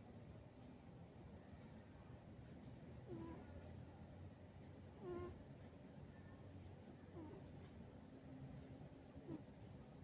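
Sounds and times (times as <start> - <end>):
cat snoring: 3.1 - 3.5, 5.0 - 5.4, 7.1 - 7.5, 9.2 - 9.5.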